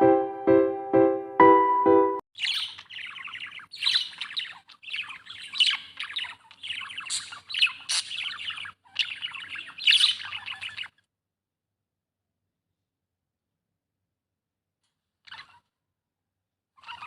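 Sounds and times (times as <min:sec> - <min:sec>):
budgerigar chirping: 0:02.4 - 0:11.0.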